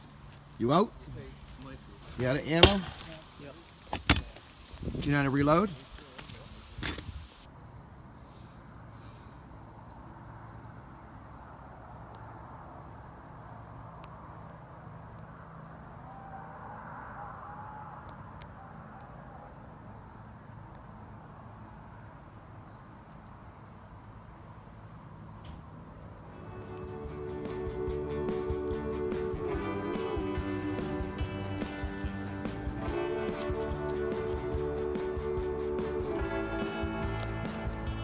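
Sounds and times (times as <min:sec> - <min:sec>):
cricket chirping: 0:00.0 - 0:38.0
outdoor background noise: 0:00.0 - 0:38.0.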